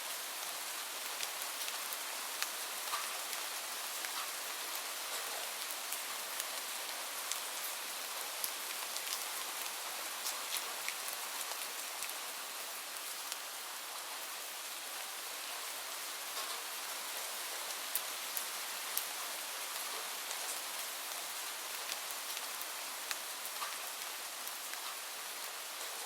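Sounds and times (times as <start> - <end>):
light rain hiss: 0.0 - 26.0
raindrops ticking on a surface: 0.1 - 26.0.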